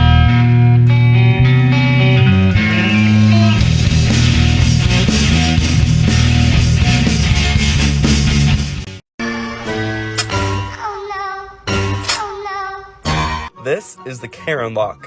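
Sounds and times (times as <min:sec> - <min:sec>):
rock band playing: 0:00.0 - 0:10.7.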